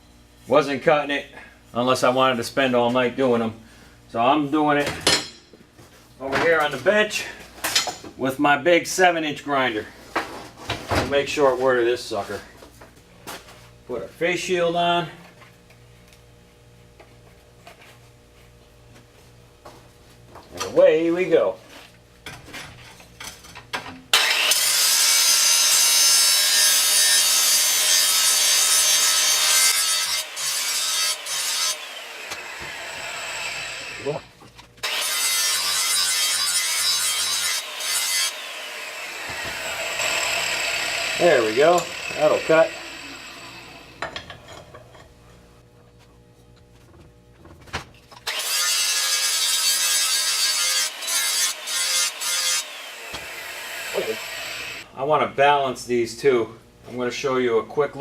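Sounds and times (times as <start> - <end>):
grinder grinding steel blade: 24.1 - 45.0, 48.2 - 54.9.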